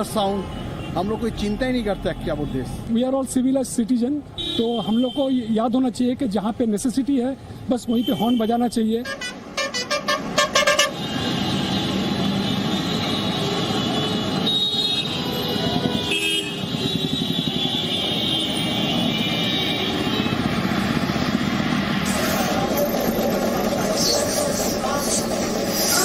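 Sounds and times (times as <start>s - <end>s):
traffic engines running: 0.0s - 5.1s, 5.8s - 26.0s
car and motorcycle horns honking: 4.4s - 5.6s, 7.9s - 20.6s.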